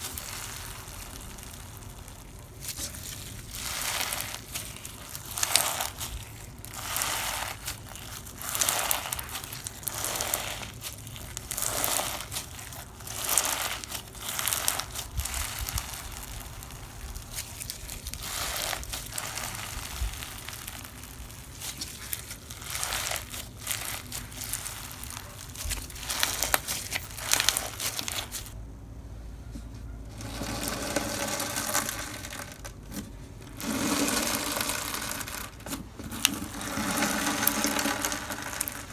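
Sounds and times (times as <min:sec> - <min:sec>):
slime squished by hand: 0:00.0 - 0:28.6.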